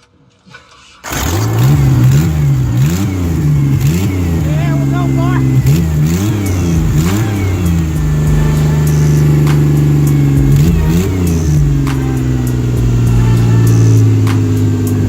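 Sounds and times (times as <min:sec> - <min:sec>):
diesel engine fast idle: 0:01.0 - 0:15.0
engine revving: 0:01.0 - 0:15.0.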